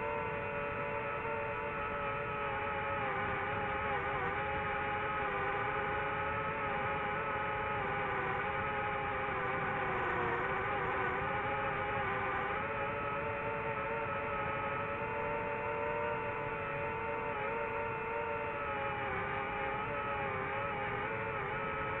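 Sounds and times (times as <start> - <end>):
drone motors whining: 0.0 - 22.0.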